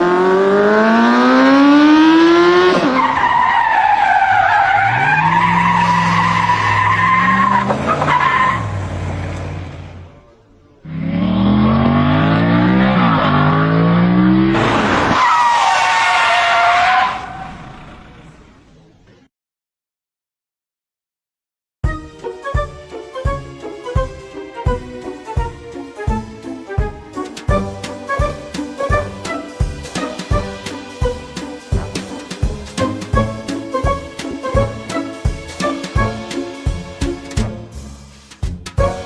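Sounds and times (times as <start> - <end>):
car engine revving: 0.0 - 15.4
tyre squeal: 2.9 - 8.8.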